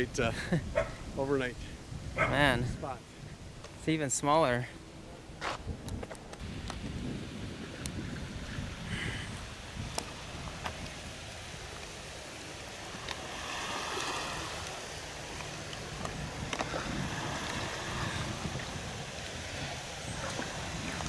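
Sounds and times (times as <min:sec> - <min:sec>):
wind buffeting microphone: 0:00.0 - 0:21.0
waves washing: 0:06.1 - 0:21.0.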